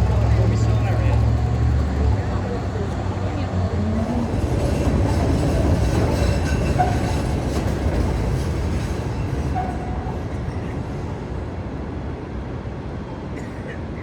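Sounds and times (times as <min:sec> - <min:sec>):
elevated train rumbling on tracks: 0:00.0 - 0:14.0
wheel squeals: 0:03.7 - 0:10.8.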